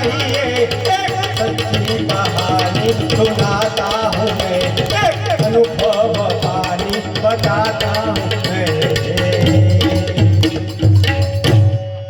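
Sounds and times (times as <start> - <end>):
rapid tabla rhythm: 0.0 - 12.0.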